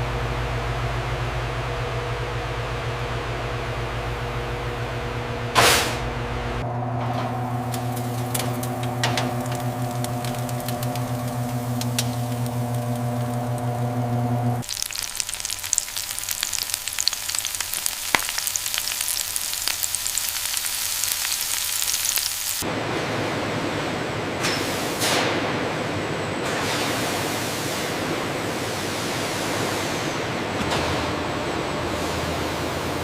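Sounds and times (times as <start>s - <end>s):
steady hum: 0.0s - 20.6s
food sizzling and crackling: 7.6s - 22.6s.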